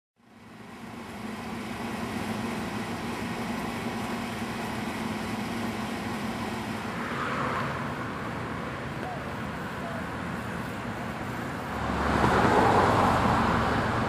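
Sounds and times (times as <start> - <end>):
engine hum: 0.2 - 14.0
street noise: 0.2 - 14.0.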